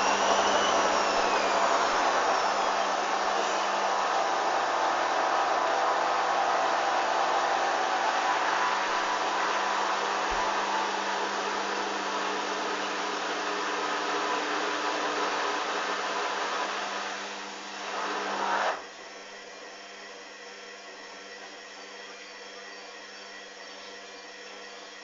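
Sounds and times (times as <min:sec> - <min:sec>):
water rushing: 0:00.0 - 0:17.2
washing machine running: 0:00.0 - 0:25.0.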